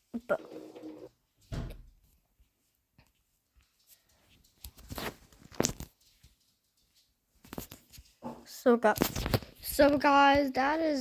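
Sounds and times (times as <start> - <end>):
scratchy rustling: 3.8 - 10.0.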